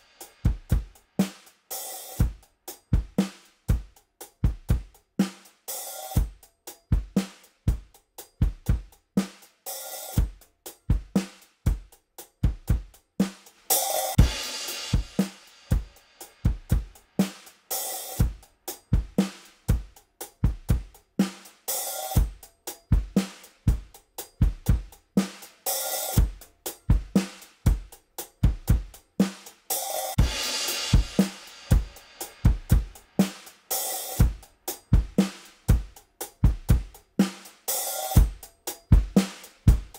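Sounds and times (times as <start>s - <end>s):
drum kit groove: 0.0s - 39.9s
cymbal crash: 13.8s - 16.5s, 30.2s - 34.2s.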